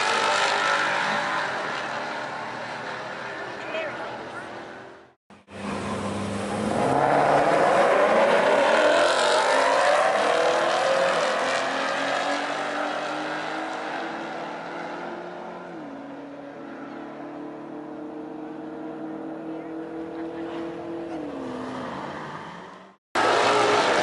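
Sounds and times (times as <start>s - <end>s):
car engine at full throttle: 22.8s - 24.0s.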